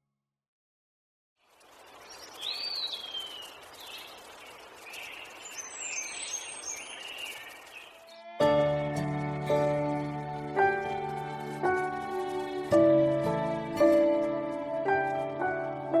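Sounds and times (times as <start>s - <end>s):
steady outdoor hiss: 1.4s - 16.0s
birds chirping and calling: 1.8s - 8.3s.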